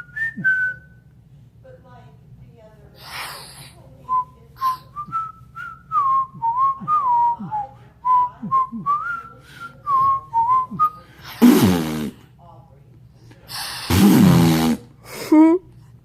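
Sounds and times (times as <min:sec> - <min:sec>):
person whistling a tune: 0:00.0 - 0:01.0.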